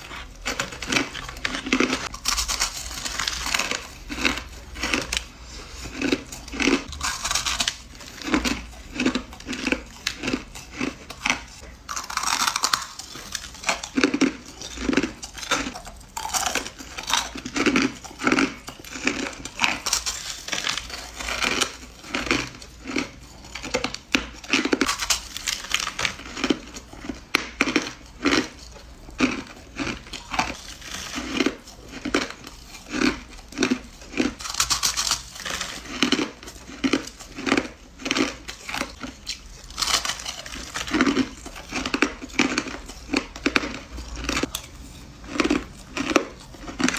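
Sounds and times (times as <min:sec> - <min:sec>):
ice crunching between teeth: 0:00.0 - 0:46.9.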